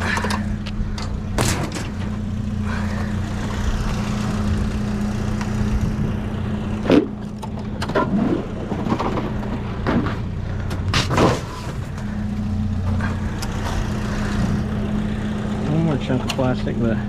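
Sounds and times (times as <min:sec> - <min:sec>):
metal and plastic clanking: 0:00.0 - 0:02.2, 0:06.8 - 0:12.0
vehicle engine idling: 0:00.0 - 0:17.0.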